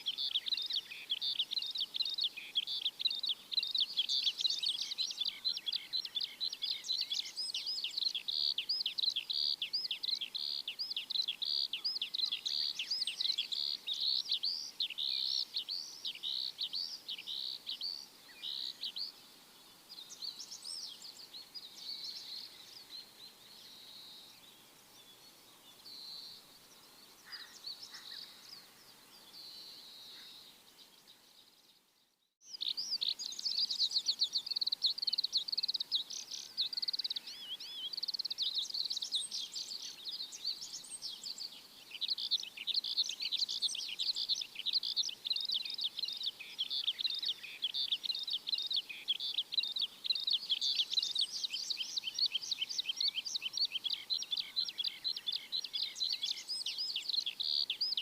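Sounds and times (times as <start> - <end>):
songbirds chirping: 0.0 - 58.0.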